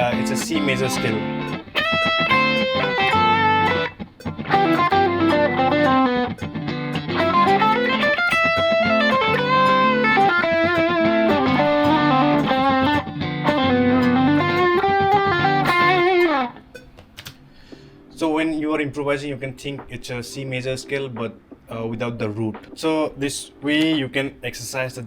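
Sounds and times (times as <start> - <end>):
electric guitar melody: 0.0 - 18.1.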